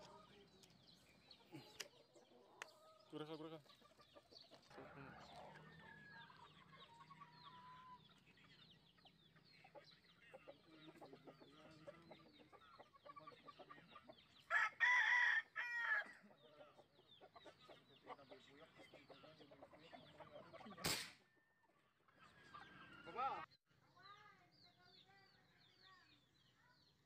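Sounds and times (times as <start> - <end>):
chickens clucking: 0.0 - 15.2, 16.0 - 21.0, 21.6 - 23.5
birds chirping: 0.0 - 27.0
rooster crowing: 14.5 - 16.1.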